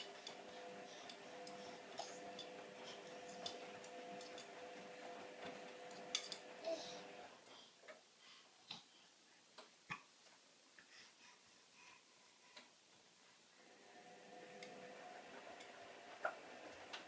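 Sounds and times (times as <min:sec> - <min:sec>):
washing machine hum: 0:00.0 - 0:07.5, 0:13.6 - 0:17.0.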